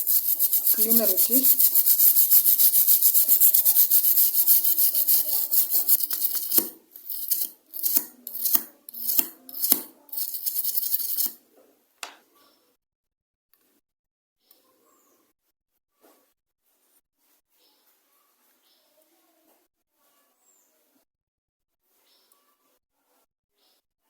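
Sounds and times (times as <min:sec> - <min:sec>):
brush scrubbing circuit board: 0:00.0 - 0:11.4.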